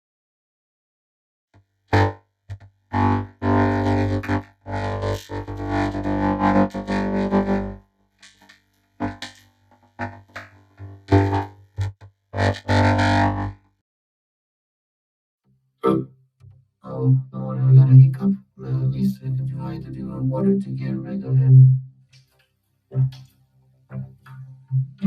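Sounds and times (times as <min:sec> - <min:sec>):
vocoder-processed voice tones: 0:15.8 - 0:16.1, 0:16.8 - 0:21.8.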